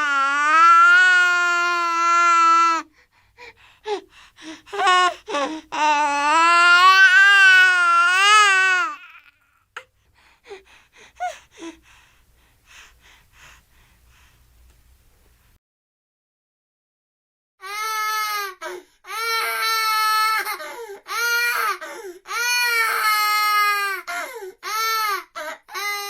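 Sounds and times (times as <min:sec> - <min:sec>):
toddler crying: 0:04.8 - 0:09.3, 0:17.6 - 0:26.0
gasping sobs: 0:20.4 - 0:22.3, 0:24.0 - 0:24.7.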